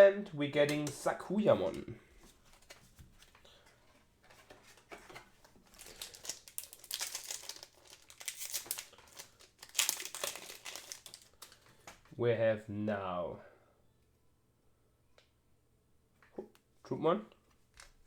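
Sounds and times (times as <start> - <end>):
foil wrapper tearing and crinkling: 5.7 - 11.6.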